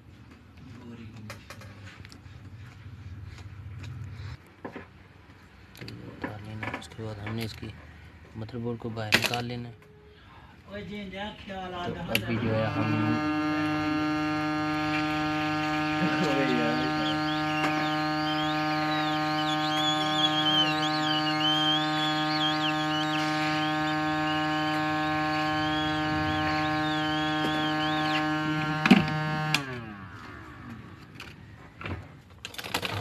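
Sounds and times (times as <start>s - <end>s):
small electric motor humming: 12.1s - 31.4s.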